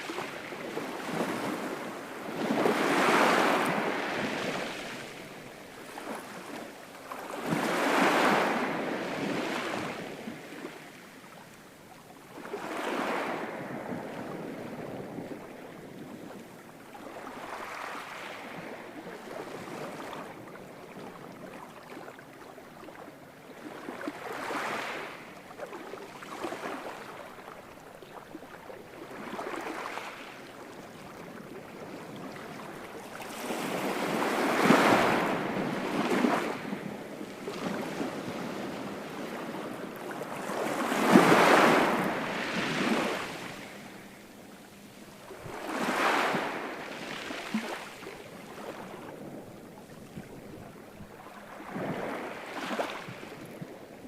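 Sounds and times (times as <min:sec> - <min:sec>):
ocean waves breaking: 0:00.0 - 0:11.1, 0:28.4 - 0:54.0.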